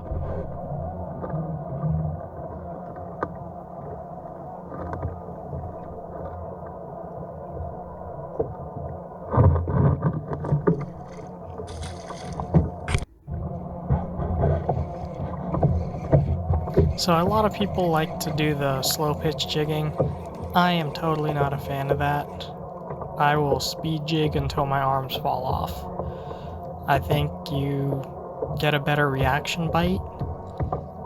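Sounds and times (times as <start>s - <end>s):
wind and water rumble: 0.0s - 31.0s
knocks and splashes: 9.3s - 13.1s, 13.8s - 27.6s, 28.3s - 31.0s.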